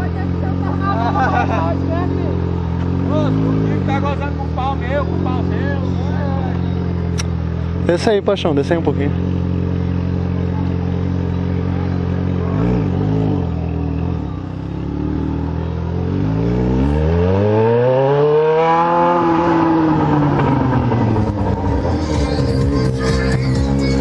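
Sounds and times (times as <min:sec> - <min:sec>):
motorcycle engine idling: 0:00.0 - 0:17.0, 0:19.7 - 0:24.0
throttle blip: 0:06.6 - 0:07.4.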